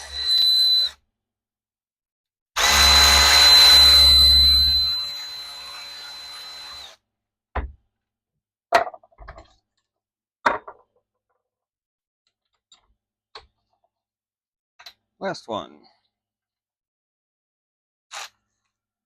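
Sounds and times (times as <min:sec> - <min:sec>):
power drill running: 0:00.0 - 0:01.0, 0:02.6 - 0:07.0.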